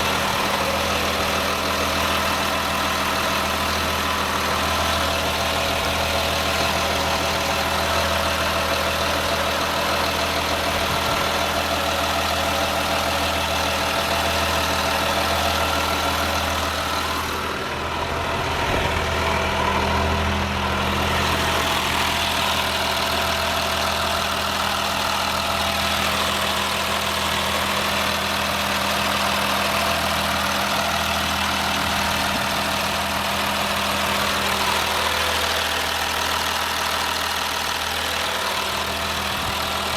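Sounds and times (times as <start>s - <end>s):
diesel bus engine idling: 0.0s - 39.9s.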